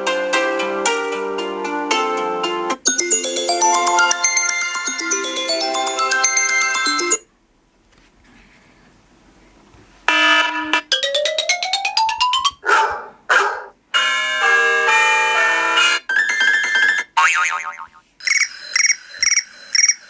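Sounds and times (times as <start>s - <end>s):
rising ringtone notes: 2.8s - 7.3s, 10.5s - 12.6s
phone ringtone chimes: 2.9s - 7.3s, 14.0s - 17.0s, 18.2s - 20.0s
recorded dog barks: 12.6s - 13.8s.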